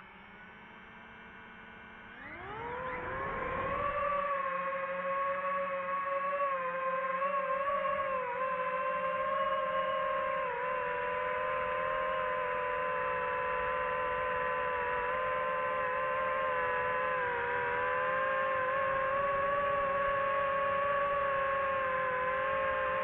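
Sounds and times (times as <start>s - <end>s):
drone propellers whining: 2.1s - 14.7s.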